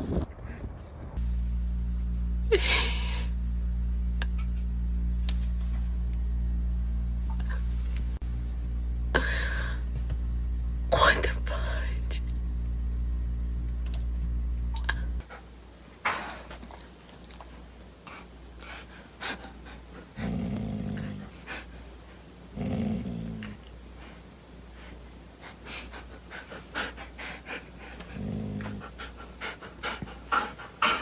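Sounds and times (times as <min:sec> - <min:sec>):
dog panting: 0:15.2 - 0:15.6, 0:18.0 - 0:22.3, 0:24.0 - 0:31.0
dog low vocal sounds: 0:18.1 - 0:21.7, 0:25.7 - 0:31.0.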